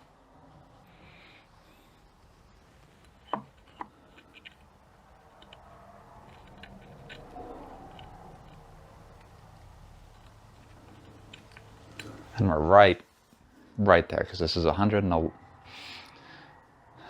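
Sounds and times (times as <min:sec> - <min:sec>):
soft handling noise: 0:01.8 - 0:13.8.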